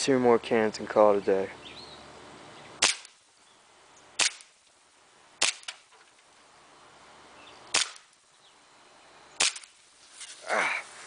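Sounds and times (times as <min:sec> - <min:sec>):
airsoft pistol shots: 0:02.8 - 0:03.2, 0:04.2 - 0:04.6, 0:05.4 - 0:05.8, 0:07.7 - 0:08.1, 0:09.4 - 0:09.8.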